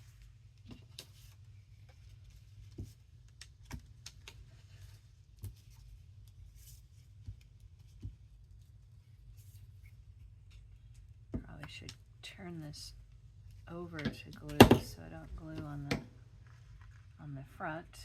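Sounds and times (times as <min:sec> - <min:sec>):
paper handled on a table: 0:00.0 - 0:11.8
faint low hum: 0:00.0 - 0:18.0.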